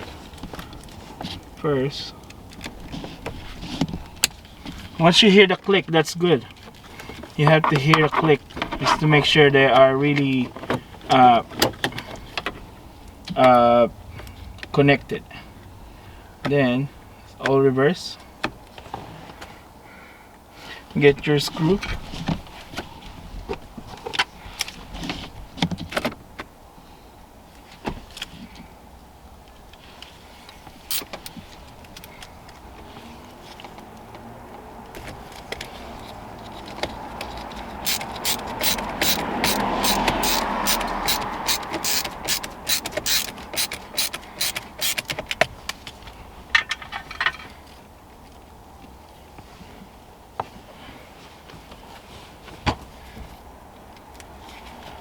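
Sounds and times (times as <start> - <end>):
hand tool clicking and knocking: 30.9 - 31.2, 37.8 - 45.5.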